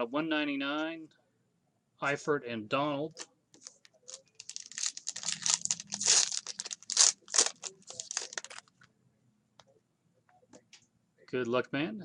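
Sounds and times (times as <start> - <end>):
plastic wrapping tearing and crinkling: 3.6 - 8.7.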